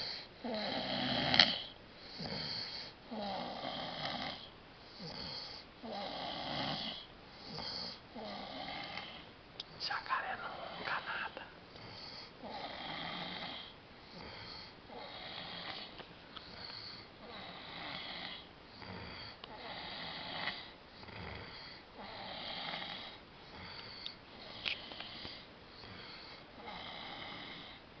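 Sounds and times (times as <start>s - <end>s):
man snoring: 0.0s - 9.2s, 10.4s - 15.8s, 16.5s - 27.8s.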